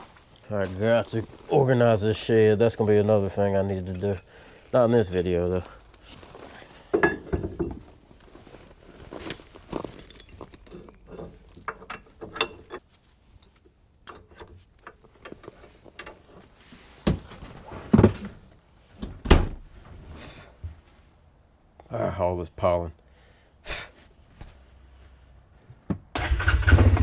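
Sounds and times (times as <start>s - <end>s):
equipment being handled: 0.0s - 18.6s.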